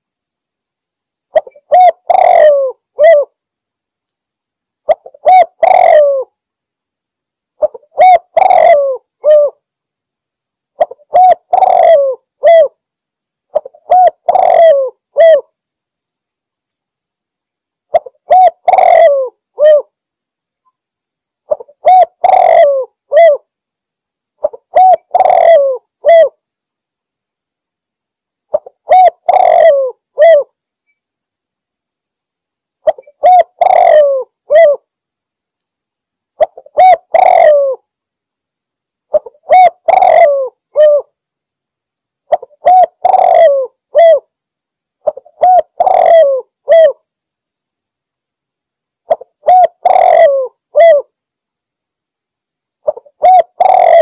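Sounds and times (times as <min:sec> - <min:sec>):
dove cooing: 0:01.3 - 0:03.3, 0:04.9 - 0:06.3, 0:07.6 - 0:09.6, 0:10.8 - 0:12.8, 0:13.5 - 0:15.5, 0:17.9 - 0:19.9, 0:21.5 - 0:23.5, 0:24.4 - 0:26.4, 0:28.5 - 0:30.5, 0:32.8 - 0:34.8, 0:36.4 - 0:37.8, 0:39.1 - 0:41.1, 0:42.3 - 0:44.3, 0:45.0 - 0:47.0, 0:49.1 - 0:51.1, 0:52.8 - 0:54.0.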